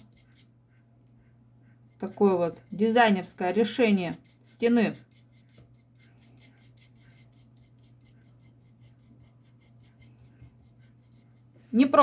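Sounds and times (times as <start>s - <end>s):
paintbrush scrubbing on paper: 0.0s - 0.9s, 1.7s - 12.0s.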